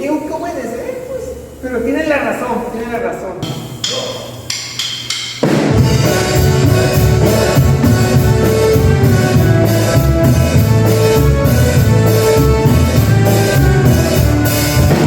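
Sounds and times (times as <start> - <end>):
drum kit steady beat: 3.4 - 15.0
band playing: 5.4 - 15.0.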